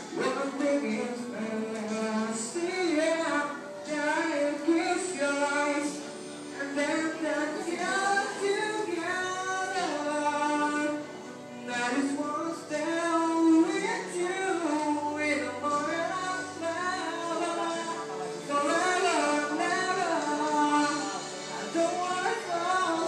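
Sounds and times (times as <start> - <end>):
musical accompaniment: 0.0 - 23.0
woman singing: 6.6 - 11.0, 11.6 - 23.0.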